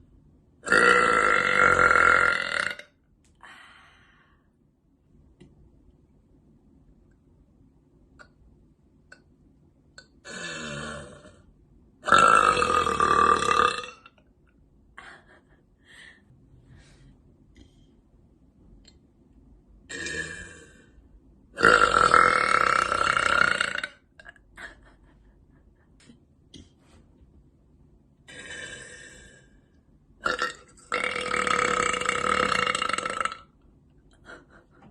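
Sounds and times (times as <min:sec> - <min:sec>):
woman burping: 0:00.6 - 0:02.9, 0:10.0 - 0:11.4, 0:12.1 - 0:14.2, 0:19.9 - 0:20.8, 0:28.3 - 0:29.4, 0:30.2 - 0:33.4.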